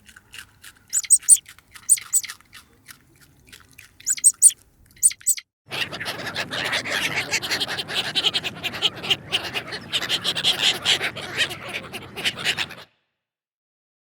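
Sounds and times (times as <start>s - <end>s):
many birds calling: 1.0s - 2.3s, 4.1s - 12.8s.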